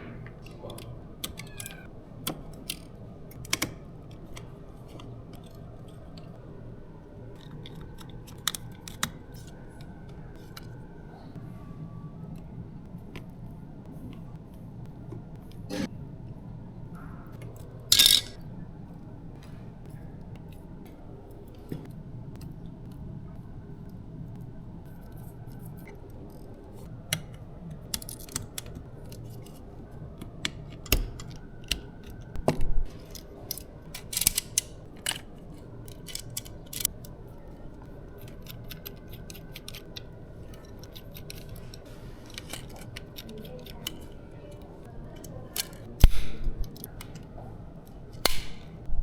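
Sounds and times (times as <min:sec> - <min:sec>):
low steady hum: 0:00.0 - 0:49.0
clicks and snaps of small parts: 0:00.3 - 0:06.3, 0:07.4 - 0:10.8, 0:17.4 - 0:18.4, 0:25.0 - 0:29.6, 0:30.2 - 0:37.2, 0:38.2 - 0:48.8.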